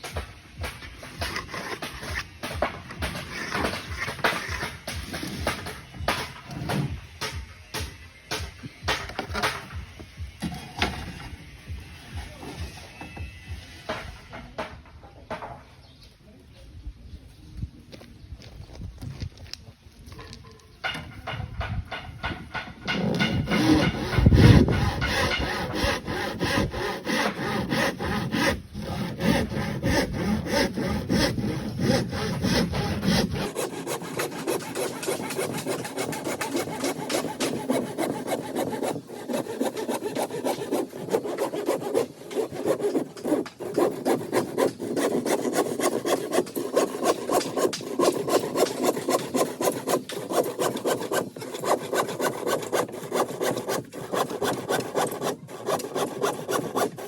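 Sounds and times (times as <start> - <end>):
hand saw cutting: 0.6 - 9.8, 20.9 - 57.0.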